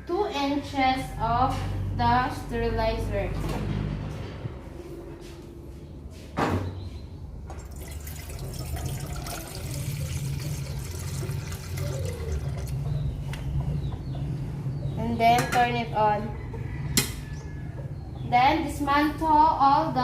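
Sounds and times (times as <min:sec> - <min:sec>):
water running into a bottle: 0:07.6 - 0:12.8.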